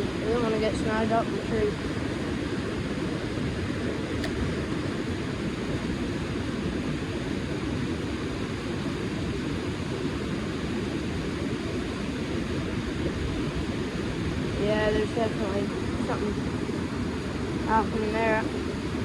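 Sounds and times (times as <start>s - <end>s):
river rushing: 0.0s - 19.0s.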